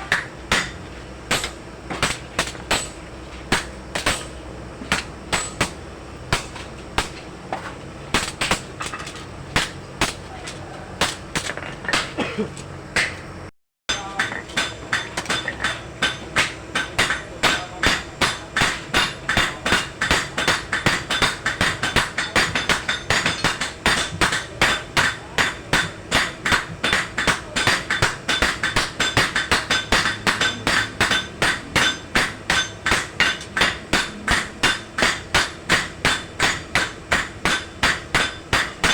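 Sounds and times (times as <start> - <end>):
hammer striking steel on anvil: 0.0 - 12.2, 13.9 - 38.9.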